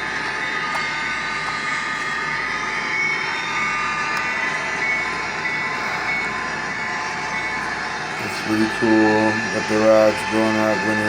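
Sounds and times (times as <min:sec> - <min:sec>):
faint high whine: 0:00.0 - 0:11.0
model train whirring on track: 0:00.0 - 0:11.0.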